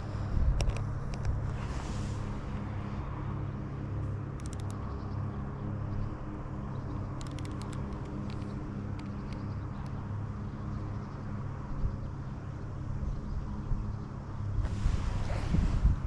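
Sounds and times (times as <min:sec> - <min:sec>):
low mechanical hum: 0:00.0 - 0:16.0
camera shutter clicks: 0:04.4 - 0:04.8, 0:07.2 - 0:08.4.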